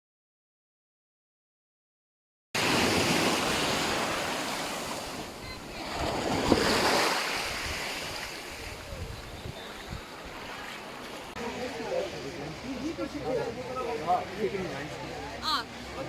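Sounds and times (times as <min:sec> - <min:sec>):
sea waves washing in: 0:02.6 - 0:12.8.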